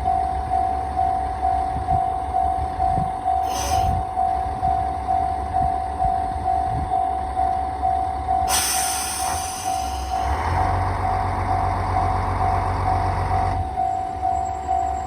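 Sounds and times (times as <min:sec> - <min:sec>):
diesel railcar engine idling: 0:00.0 - 0:15.0
level-crossing warning bell: 0:00.0 - 0:15.0
air brake hiss: 0:03.4 - 0:04.0, 0:08.5 - 0:10.3.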